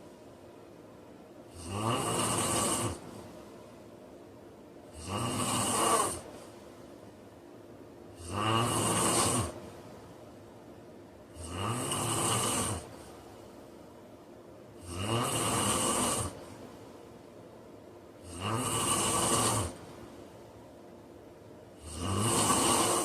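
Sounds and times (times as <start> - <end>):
quiet breathing: 0.0 - 23.0
man snoring: 1.5 - 3.0, 4.9 - 6.3, 8.1 - 9.6, 11.3 - 13.2, 14.8 - 16.4, 18.2 - 19.8, 21.8 - 23.0.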